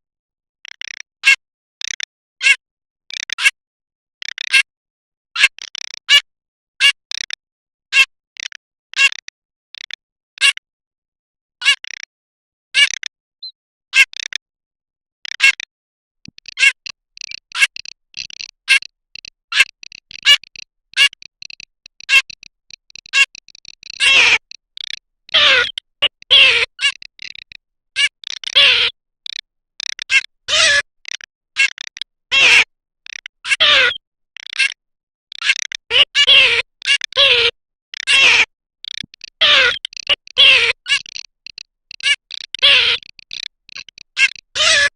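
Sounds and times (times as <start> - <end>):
duck calling: 16.4 - 44.9.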